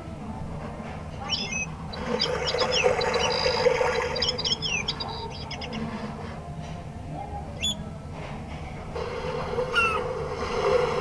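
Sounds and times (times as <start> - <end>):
recorded birdsong from alarm clock: 1.3 - 5.8, 7.6 - 7.8.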